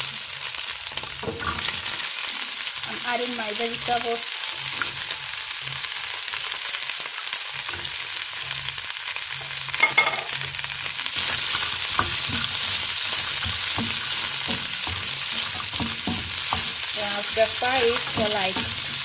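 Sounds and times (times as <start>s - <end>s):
vegetables sizzling in oil: 0.0s - 19.0s
stirring knocks: 13.2s - 19.0s.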